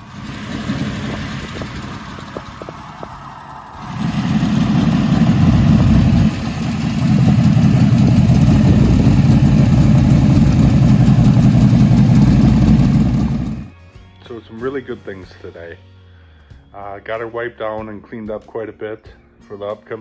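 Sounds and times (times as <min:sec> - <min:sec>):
loud car engine running: 0:00.0 - 0:13.7.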